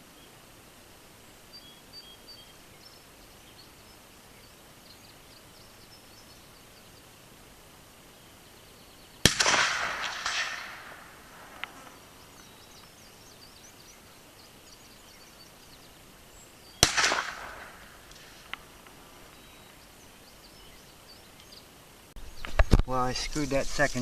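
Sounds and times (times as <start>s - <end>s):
revolver shots with echo: 9.3s - 11.1s, 16.8s - 17.8s.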